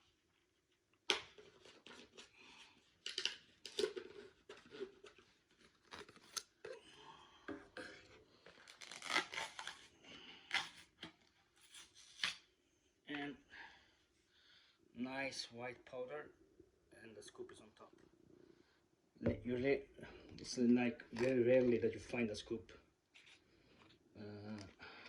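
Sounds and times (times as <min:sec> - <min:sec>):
tearing and scraping of tub seal: 0:01.1 - 0:06.9, 0:07.7 - 0:12.5.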